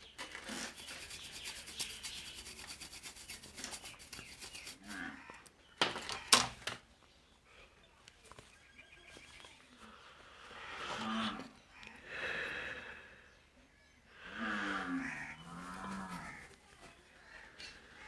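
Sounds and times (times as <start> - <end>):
brush scrubbing circuit board: 0.4 - 5.0.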